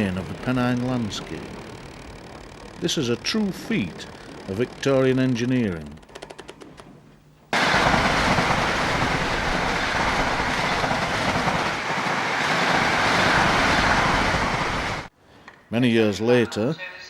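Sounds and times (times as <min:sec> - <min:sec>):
train wheels on rails: 0:07.6 - 0:15.1.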